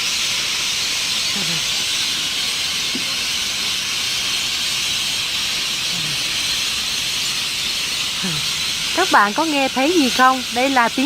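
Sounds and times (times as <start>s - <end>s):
flock of birds calling: 1.1s - 2.3s, 4.4s - 11.0s.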